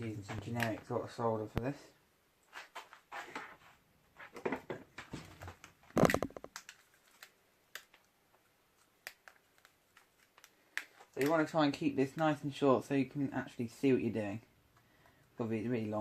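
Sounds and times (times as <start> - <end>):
rustling of small objects: 2.5 - 11.6.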